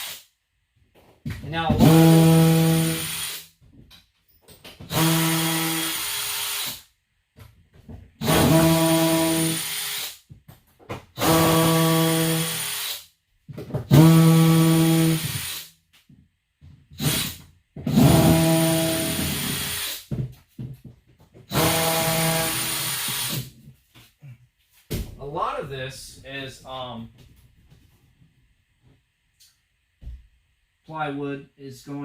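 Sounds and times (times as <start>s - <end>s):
power drill whirring: 4.9s - 6.8s, 8.2s - 10.2s, 13.9s - 15.7s, 17.0s - 20.1s, 21.5s - 23.5s.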